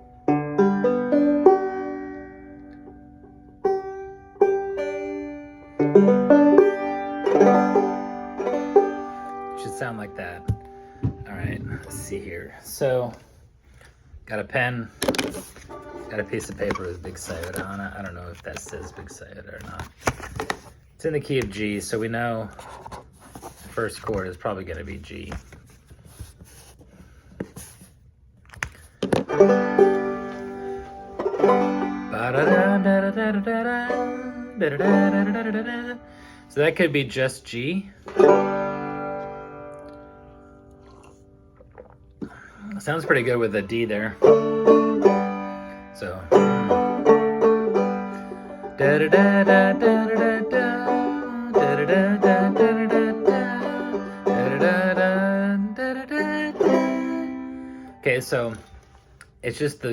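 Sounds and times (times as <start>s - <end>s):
banjo strumming: 0.0s - 13.2s, 14.5s - 19.3s, 29.0s - 40.7s, 42.8s - 58.8s.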